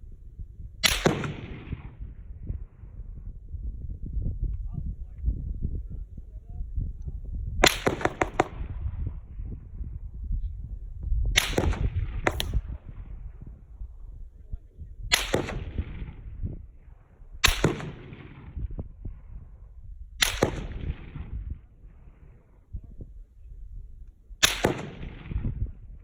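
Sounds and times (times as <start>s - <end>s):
gunshots cracking with echo: 0.8s - 2.0s, 7.6s - 8.8s, 11.4s - 13.0s, 15.1s - 16.2s, 17.4s - 18.6s, 20.2s - 21.4s, 24.4s - 25.8s.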